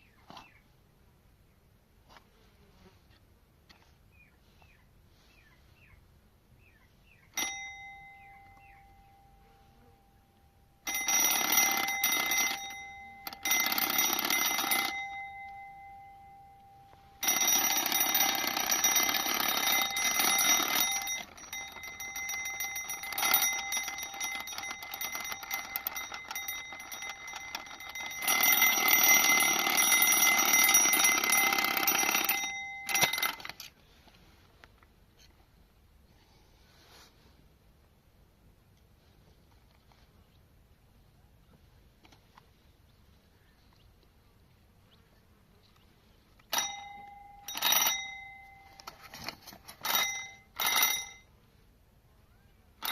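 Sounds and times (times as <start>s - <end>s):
alarm clock bell ringing: 7.4s - 33.6s, 46.5s - 51.3s.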